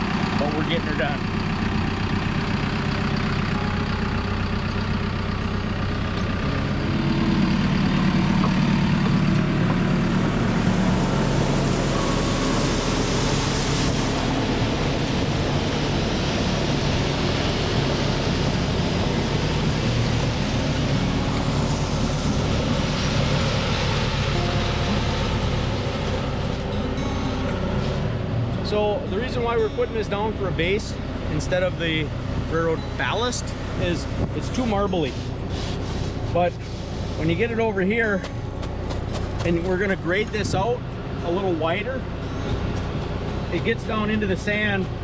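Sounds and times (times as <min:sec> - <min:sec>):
heavy equipment engine running: 0:00.0 - 0:45.0.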